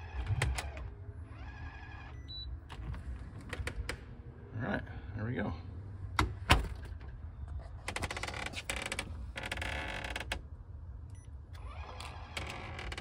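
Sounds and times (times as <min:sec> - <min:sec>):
lock motor whirring: 0:11.5 - 0:13.0.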